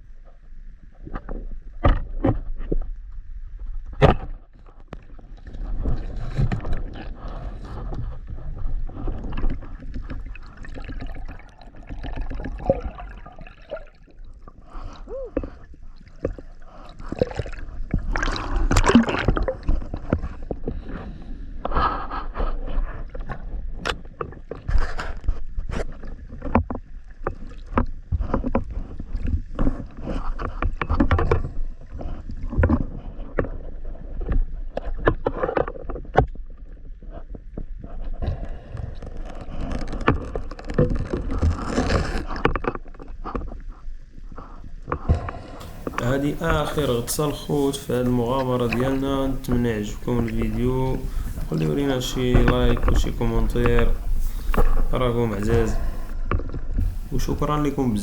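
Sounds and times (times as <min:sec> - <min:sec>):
sea water sloshing and gurgling: 0:05.0 - 0:33.8, 0:45.6 - 0:58.0.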